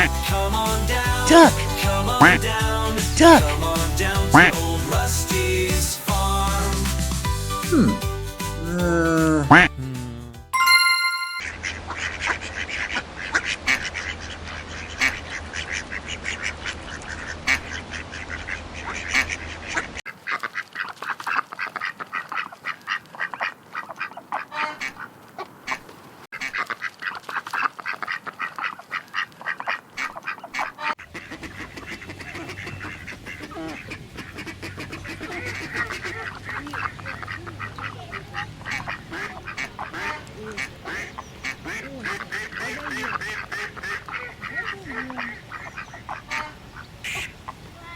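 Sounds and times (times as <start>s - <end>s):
ducks quacking: 1.3s - 2.5s, 4.3s - 4.6s, 11.9s - 47.7s.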